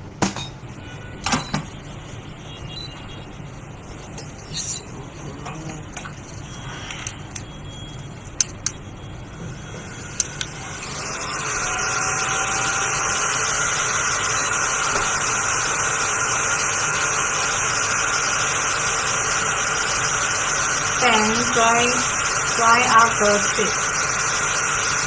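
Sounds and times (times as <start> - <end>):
hot air gun hissing: 9.5 - 25.0.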